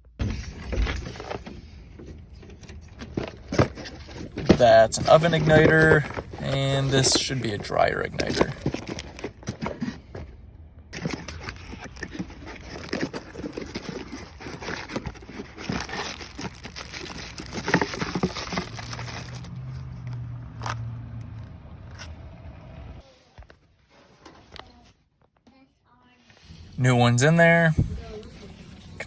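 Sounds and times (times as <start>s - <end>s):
clicks and scrapes of parts: 0.6s - 22.2s
low hum: 8.6s - 13.8s.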